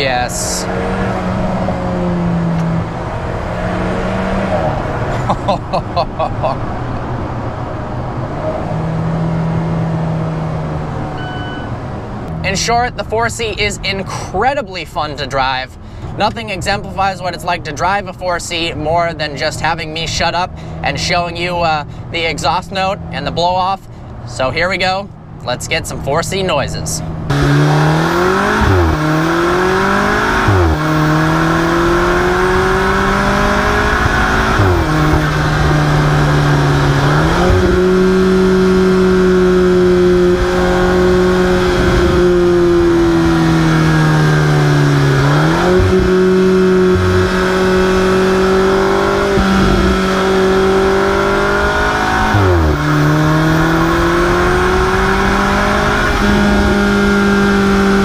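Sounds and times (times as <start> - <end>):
car engine and exhaust revving: 0.0 - 58.0.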